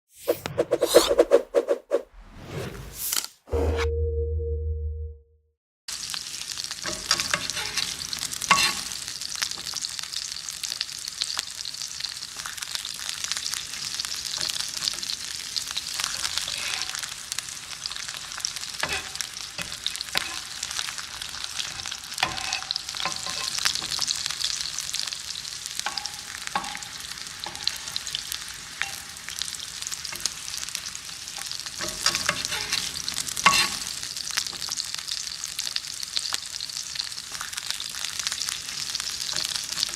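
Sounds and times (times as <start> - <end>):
fries sizzling in hot oil: 5.9 - 39.9.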